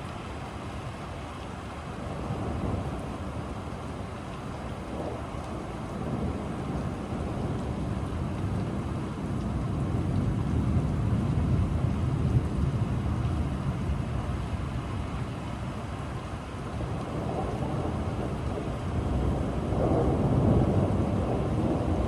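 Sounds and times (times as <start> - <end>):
rain hiss: 0.0 - 22.0
rolling thunder: 16.6 - 22.0.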